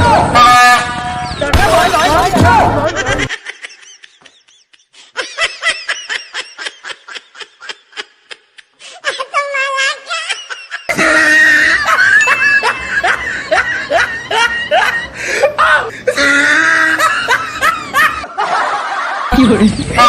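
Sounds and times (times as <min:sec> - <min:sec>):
laughter and shrieking voices: 0:01.8 - 0:20.0
person giggling: 0:02.8 - 0:18.3.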